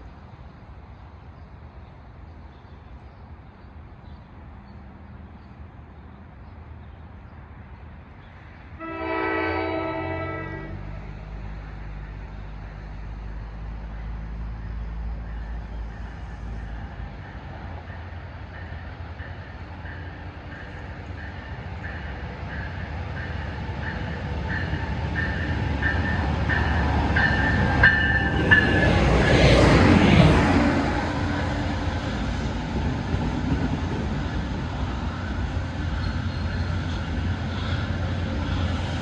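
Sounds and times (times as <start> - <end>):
train rushing past: 8.5 - 39.0.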